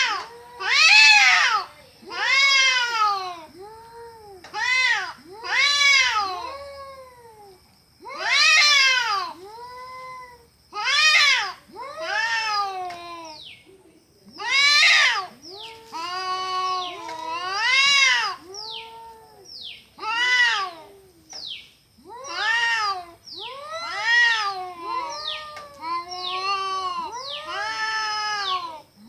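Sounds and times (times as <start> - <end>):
cat meowing: 14.4 - 21.0, 22.1 - 28.8.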